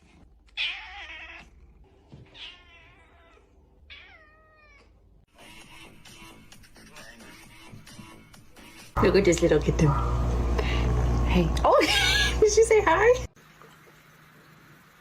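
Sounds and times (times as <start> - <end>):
cat meowing: 0.6 - 1.6, 2.3 - 5.0.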